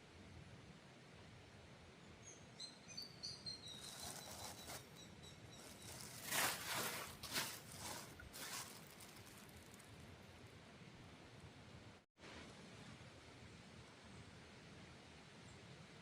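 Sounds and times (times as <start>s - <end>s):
bird chirping: 2.3s - 6.2s
rustling near microphone: 3.7s - 10.4s.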